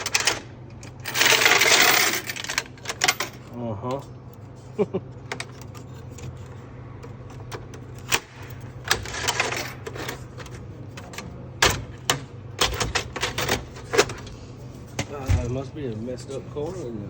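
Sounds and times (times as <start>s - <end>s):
coin mechanism clicks and knocks: 0.0s - 3.5s, 7.4s - 14.2s
coins being handled: 0.0s - 3.5s, 7.2s - 11.3s
steady low hum: 0.0s - 17.0s.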